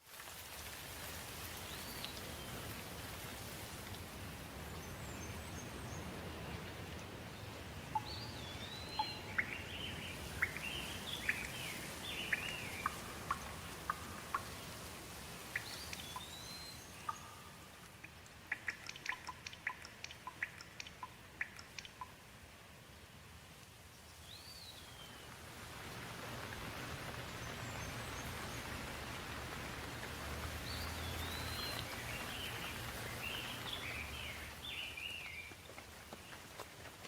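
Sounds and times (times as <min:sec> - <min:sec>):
water dripping: 0:00.0 - 0:22.6, 0:23.5 - 0:37.0
steady rain: 0:00.0 - 0:37.0
birds chirping: 0:04.6 - 0:22.2, 0:26.4 - 0:36.4.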